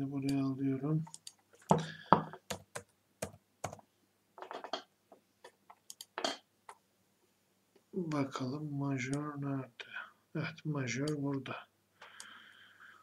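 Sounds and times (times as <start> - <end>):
keyboard typing: 1.1 - 3.8.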